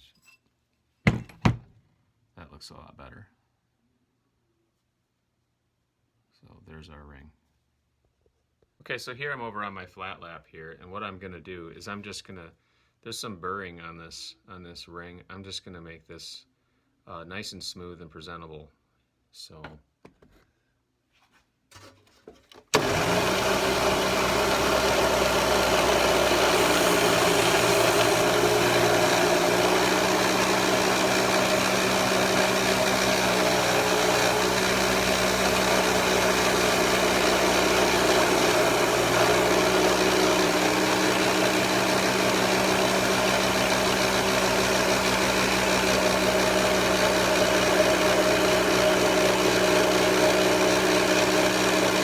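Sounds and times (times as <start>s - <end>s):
motor humming: 22.8s - 52.0s.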